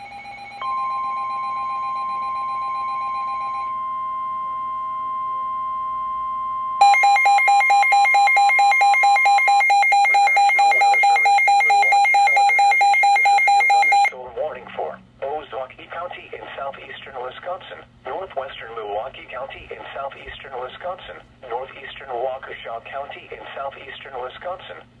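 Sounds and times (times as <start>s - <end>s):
steady warning alarm tone: 0.0s - 14.2s
electronic tones: 6.8s - 14.2s
rapid electronic alarm beeps: 6.8s - 14.2s.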